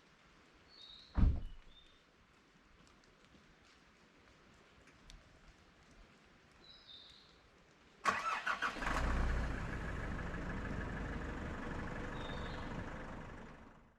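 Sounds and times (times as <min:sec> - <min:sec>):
vehicle engine starting and idling: 0:08.1 - 0:13.9
bird chirping: 0:12.0 - 0:12.8.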